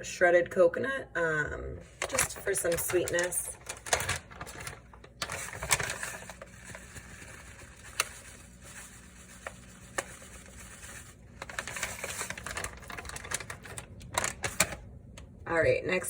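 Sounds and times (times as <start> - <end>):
container rustling: 2.0 - 14.8.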